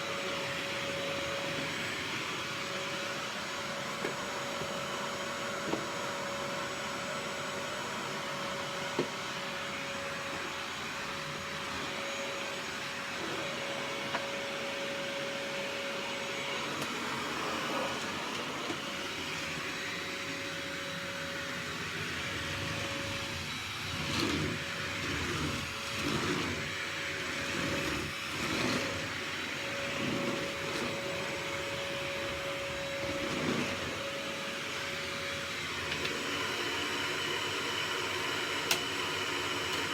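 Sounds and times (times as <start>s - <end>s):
vacuum cleaner running: 0.0s - 39.9s.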